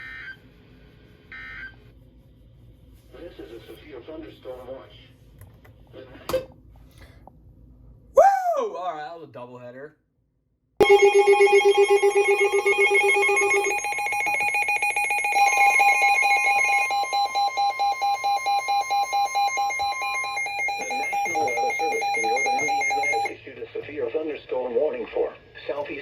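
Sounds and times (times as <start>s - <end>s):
steady tone: 10.8s - 23.3s
pulsing alarm tones: 10.8s - 23.4s
person speaking: 20.5s - 23.3s.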